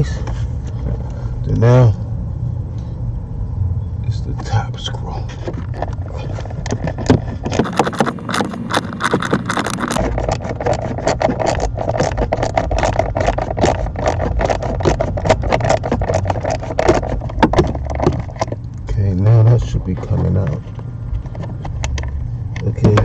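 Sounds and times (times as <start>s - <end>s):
hand tool clicking and scraping: 6.6s - 18.6s.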